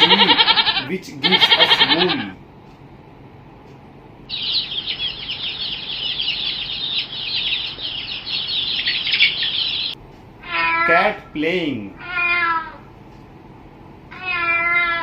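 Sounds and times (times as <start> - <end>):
chorus of birds chirping: 4.3 - 10.0.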